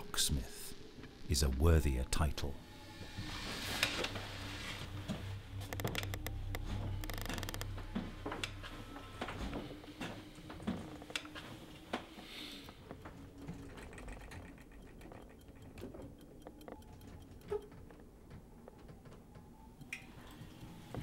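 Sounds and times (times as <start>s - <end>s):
fast mechanical ticking: 13.0s - 17.8s
sharp clicks: 13.4s - 17.8s.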